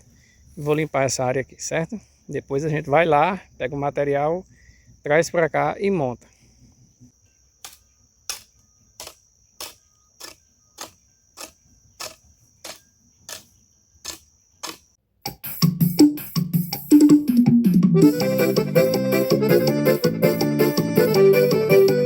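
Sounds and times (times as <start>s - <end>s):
crickets chirring: 0.0s - 17.4s
hoe chopping into ground: 7.6s - 14.9s
keyboard music: 15.3s - 22.0s.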